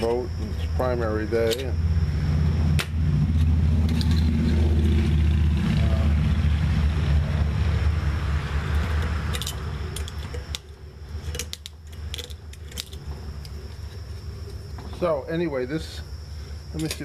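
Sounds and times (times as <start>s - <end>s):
vehicle engine rumbling: 0.0s - 17.0s
hand tool clicking on metal: 1.5s - 1.7s.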